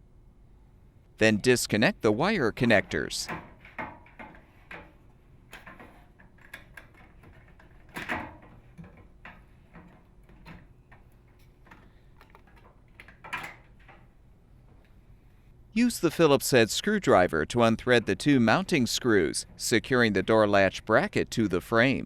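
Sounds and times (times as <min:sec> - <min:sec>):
handling noises: 0:01.7 - 0:15.5.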